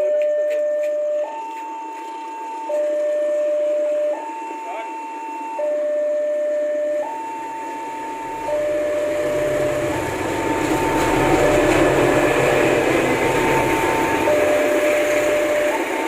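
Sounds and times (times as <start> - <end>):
level-crossing two-tone alarm: 0.0 - 16.0
approaching train rumble: 8.1 - 16.0.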